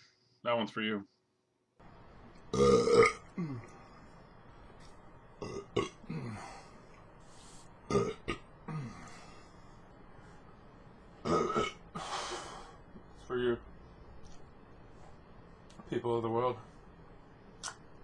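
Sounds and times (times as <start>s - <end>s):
loud burps: 2.5s - 3.7s, 5.4s - 6.5s, 7.9s - 9.0s, 11.2s - 11.8s.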